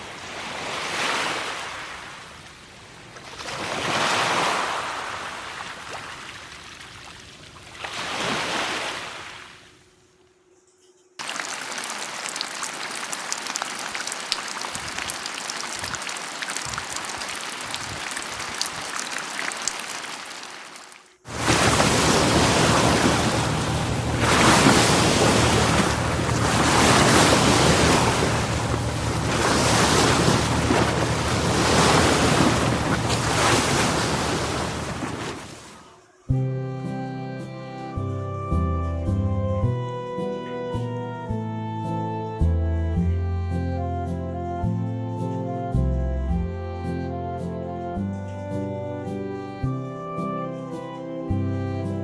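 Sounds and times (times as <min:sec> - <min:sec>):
surf washing in and out: 0:00.0 - 0:06.9, 0:21.3 - 0:35.9
steady hiss with faint crackles: 0:11.2 - 0:24.8.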